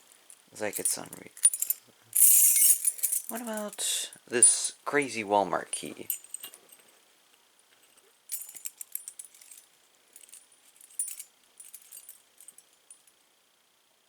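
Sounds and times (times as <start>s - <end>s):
metal keys jingling: 0.7s - 3.8s, 5.9s - 6.9s, 7.8s - 12.7s.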